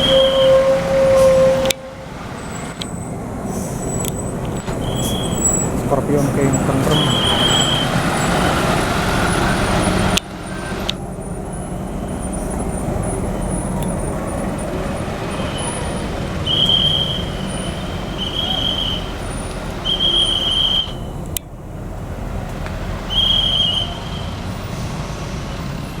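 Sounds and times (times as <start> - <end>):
short high whistle-like tones: 0.0 - 2.0, 15.4 - 19.1, 19.8 - 21.2, 23.1 - 24.3
bus engine and road noise: 0.0 - 26.0
steady traffic rumble: 0.0 - 26.0.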